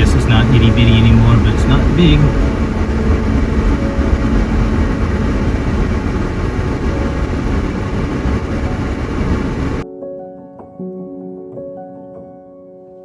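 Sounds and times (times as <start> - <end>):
car engine: 0.0 - 9.8
road noise: 0.0 - 9.8
wind noise: 0.0 - 9.8.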